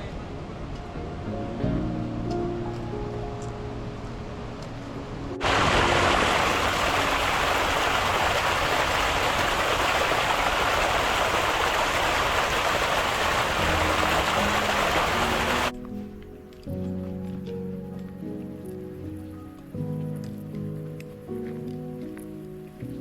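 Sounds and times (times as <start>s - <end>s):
faint background music: 0.0s - 6.3s, 13.6s - 23.0s
rushing water: 0.0s - 15.8s.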